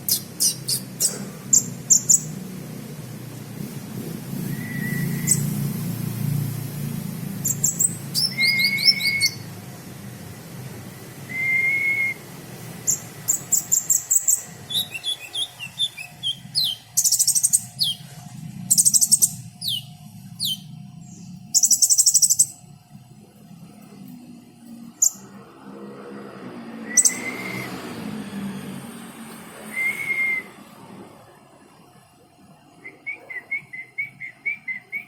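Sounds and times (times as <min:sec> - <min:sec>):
sunbird singing: 0:04.4 - 0:05.7, 0:07.3 - 0:09.5, 0:12.8 - 0:18.1, 0:18.7 - 0:22.6, 0:27.0 - 0:27.7.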